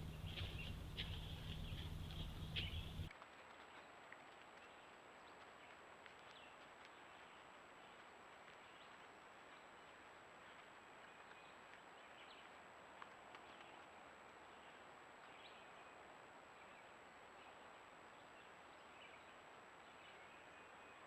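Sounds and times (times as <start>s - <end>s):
faint chirps: 0.0s - 3.1s
faint outdoor hiss: 0.0s - 21.0s.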